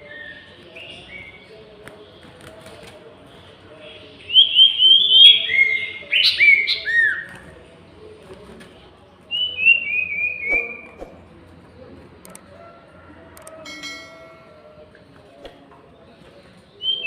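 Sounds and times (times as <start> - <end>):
bird song whistled notes: 4.2 - 7.2, 9.3 - 11.0, 16.7 - 17.0.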